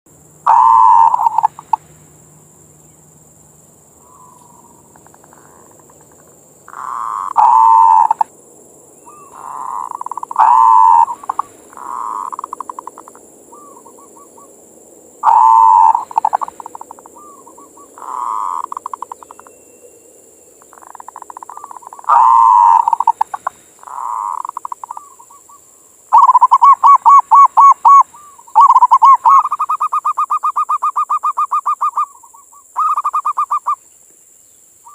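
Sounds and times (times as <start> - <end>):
dove cooing: 0.4 - 1.8, 4.0 - 8.3, 9.0 - 14.5, 15.2 - 19.5, 20.7 - 33.8.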